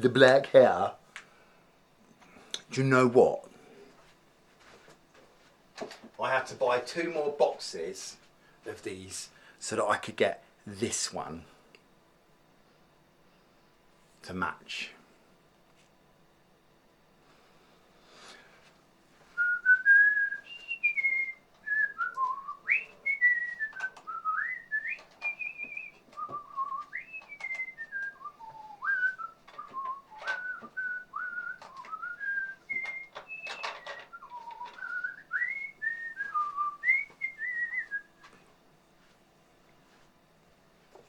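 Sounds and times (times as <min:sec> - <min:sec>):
person whistling a tune: 0:19.4 - 0:38.1.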